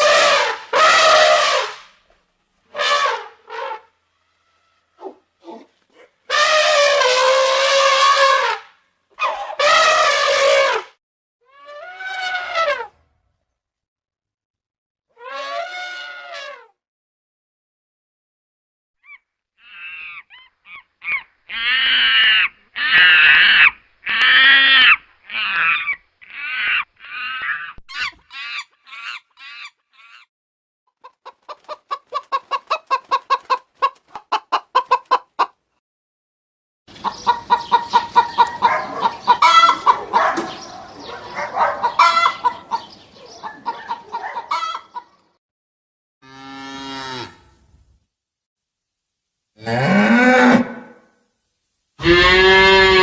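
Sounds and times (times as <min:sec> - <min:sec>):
chickens clucking and cackling: 0:00.0 - 0:01.6, 0:09.2 - 0:10.8, 0:27.9 - 0:30.3, 0:31.0 - 0:35.6, 0:36.9 - 0:45.4.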